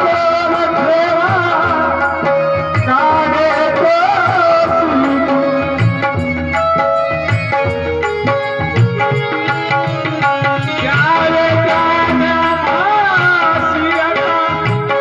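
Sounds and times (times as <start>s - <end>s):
person singing: 0.0s - 6.5s, 9.0s - 15.0s.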